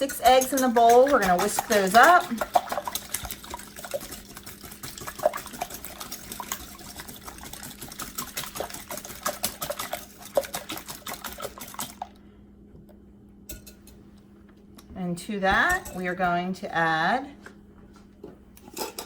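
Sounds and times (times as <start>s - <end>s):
eggs whisked in a bowl: 0.0s - 12.2s.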